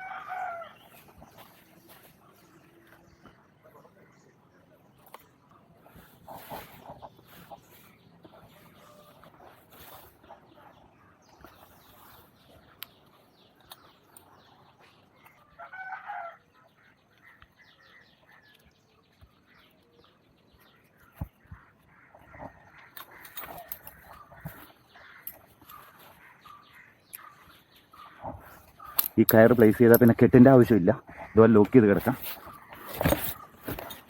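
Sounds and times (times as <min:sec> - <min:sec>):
faint rustling: 0:20.6 - 0:34.0.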